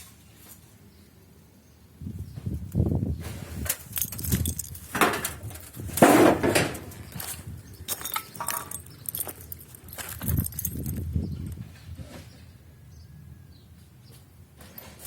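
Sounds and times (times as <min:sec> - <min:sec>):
clattering scrape: 0:03.2 - 0:07.0
hard objects knocking and clinking: 0:07.9 - 0:11.0.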